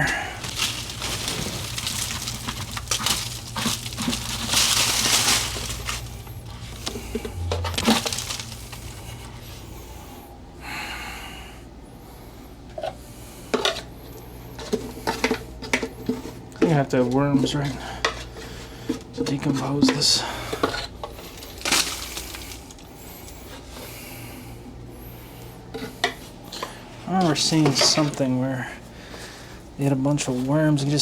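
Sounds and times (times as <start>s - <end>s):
objects knocking and clattering: 0.0s - 9.4s
long rustle: 0.0s - 9.7s
low steady hum: 0.0s - 31.0s.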